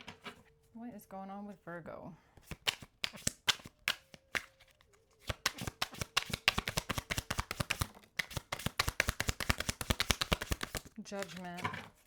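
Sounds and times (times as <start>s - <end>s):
cards being shuffled: 2.4s - 12.0s.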